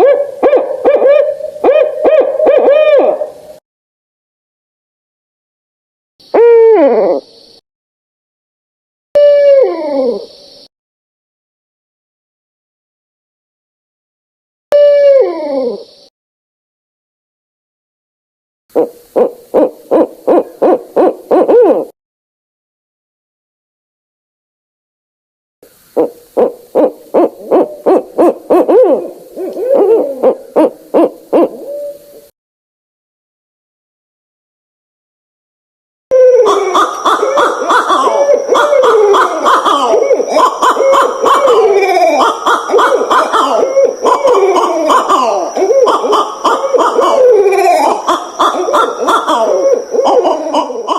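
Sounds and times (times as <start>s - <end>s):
owl hooting: 0.0s - 3.4s, 6.2s - 7.6s, 9.2s - 10.7s, 14.7s - 16.1s, 18.7s - 22.0s, 25.6s - 32.3s, 36.1s - 50.9s.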